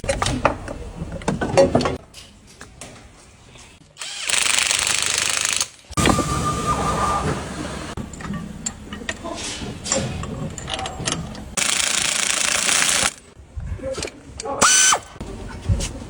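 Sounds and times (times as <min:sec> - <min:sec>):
power tool burst: 0:04.0 - 0:07.3, 0:11.6 - 0:13.3
hand tools clicking and knocking: 0:08.0 - 0:13.4.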